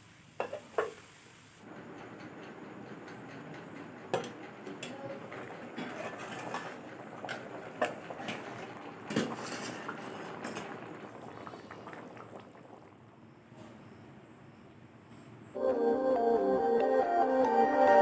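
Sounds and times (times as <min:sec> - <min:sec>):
curry bubbling in a pot: 0:04.2 - 0:14.0.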